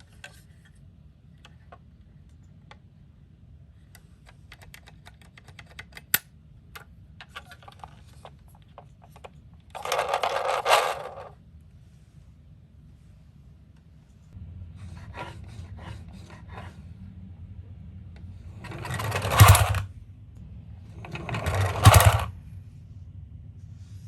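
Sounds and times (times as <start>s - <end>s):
toy cars rattling and clattering: 6.8s - 11.4s, 18.4s - 19.9s, 21.0s - 22.4s
toy cars rolling on cardboard: 7.3s - 11.4s, 18.5s - 19.9s, 21.0s - 22.3s.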